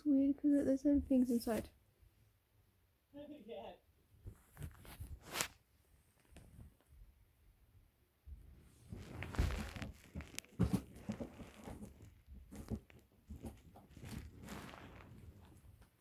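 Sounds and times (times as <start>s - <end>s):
crinkling packaging: 8.9s - 15.6s.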